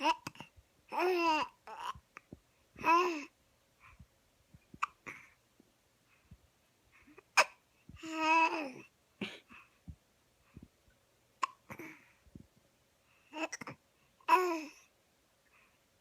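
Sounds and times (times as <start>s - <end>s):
baby vocal sound: 0.0s - 3.3s, 7.3s - 8.9s, 13.3s - 14.8s
baby hiccupping: 4.8s - 5.3s, 7.3s - 8.8s, 11.4s - 12.0s.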